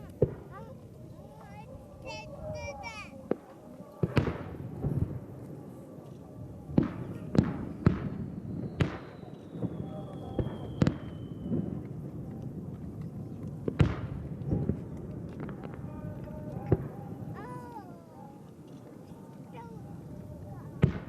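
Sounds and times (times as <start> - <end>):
distant fireworks bangs: 0.0 - 0.9, 3.2 - 17.6, 19.6 - 21.0.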